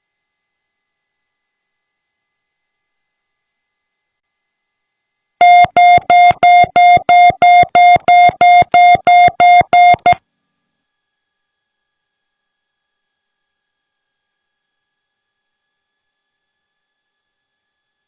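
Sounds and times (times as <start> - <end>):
electronic alert beeps: 5.4 - 10.2.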